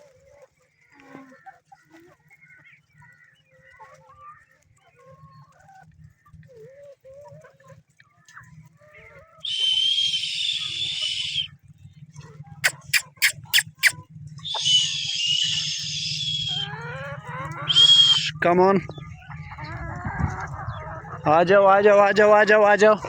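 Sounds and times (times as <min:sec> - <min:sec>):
hens clucking: 0:09.4 - 0:11.5, 0:12.6 - 0:23.0
sharp clicks: 0:12.6 - 0:16.7.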